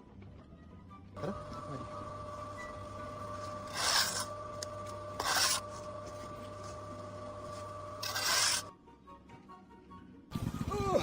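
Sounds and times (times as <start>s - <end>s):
mechanical hum: 1.2s - 8.7s
short rasping scrapes: 3.4s - 6.8s, 7.4s - 8.7s.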